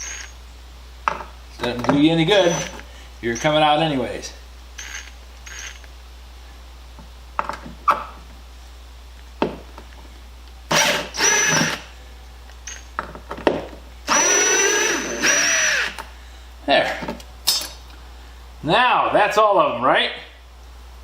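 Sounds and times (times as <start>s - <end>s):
impact driver bursts: 2.4s - 2.8s, 10.7s - 11.9s, 14.1s - 16.0s.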